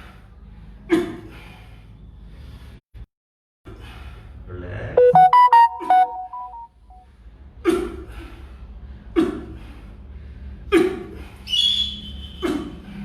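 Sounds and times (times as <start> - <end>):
short high tone: 5.0 - 6.9.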